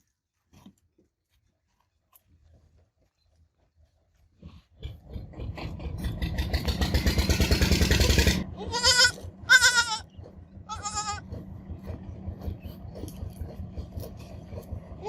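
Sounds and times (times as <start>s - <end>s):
loud rough pulsing rumble: 4.9s - 15.0s
goat kid bleating: 8.5s - 11.2s.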